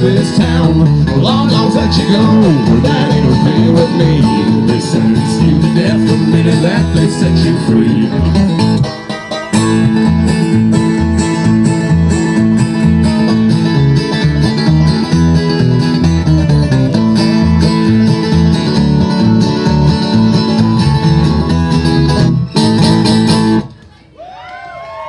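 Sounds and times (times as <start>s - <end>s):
bluegrass string band playing: 0.0s - 23.7s
pulsing bass: 0.0s - 23.7s.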